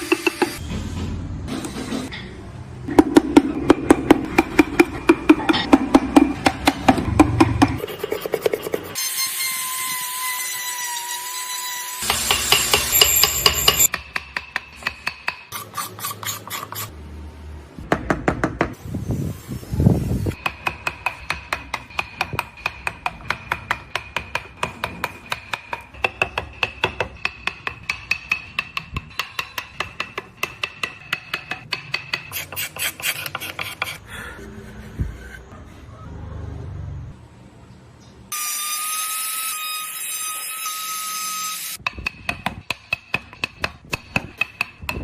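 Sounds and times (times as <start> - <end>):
hand file rasping wood: 32.2 - 34.0.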